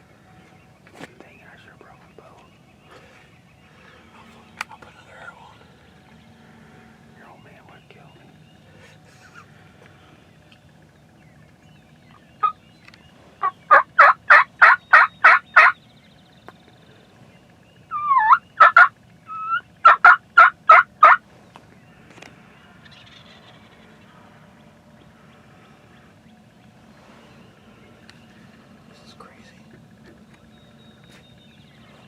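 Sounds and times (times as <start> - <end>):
turkey yelping: 12.1 - 12.6, 13.4 - 15.8, 17.9 - 21.2.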